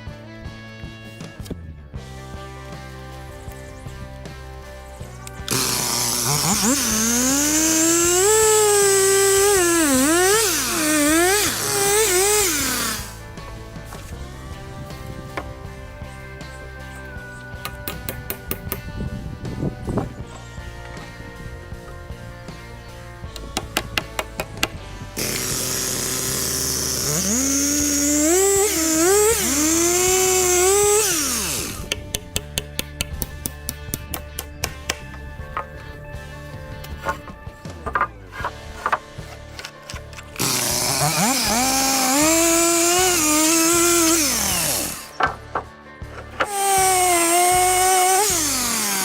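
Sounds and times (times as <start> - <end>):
background music: 0.0 - 49.0
power drill motor whine: 5.3 - 13.3, 25.2 - 32.0, 40.4 - 45.2, 46.4 - 49.0.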